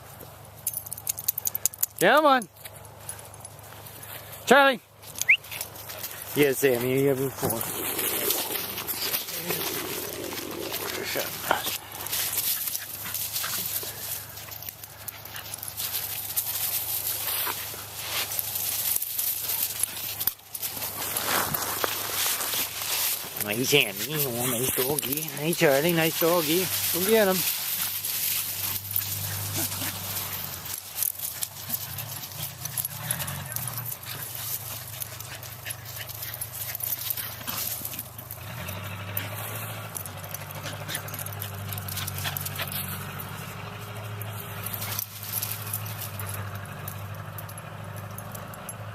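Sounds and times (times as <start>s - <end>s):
dogs scuffling and rustling: 2.5s - 47.5s
dog vocal sounds: 7.3s - 16.2s, 22.3s - 45.8s.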